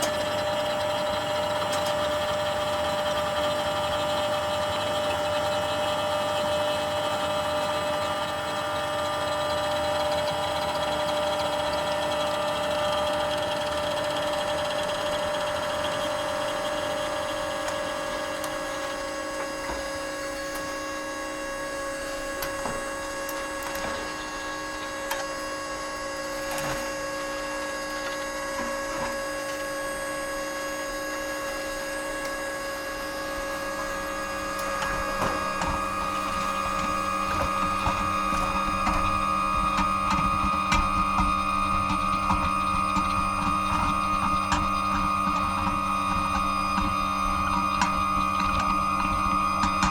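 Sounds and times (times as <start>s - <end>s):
copy machine humming and whining: 0.0s - 49.9s.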